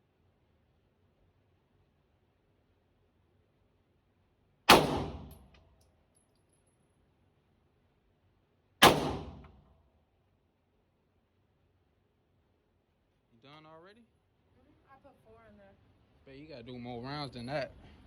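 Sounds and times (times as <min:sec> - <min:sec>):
handgun shots: 0:04.7 - 0:05.5, 0:08.8 - 0:09.6.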